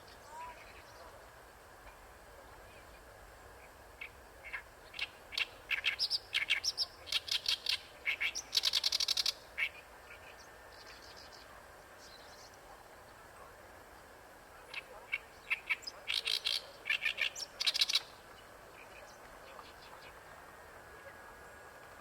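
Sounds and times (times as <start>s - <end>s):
warbler harsh chattering song: 3.6s - 12.6s, 14.7s - 20.2s.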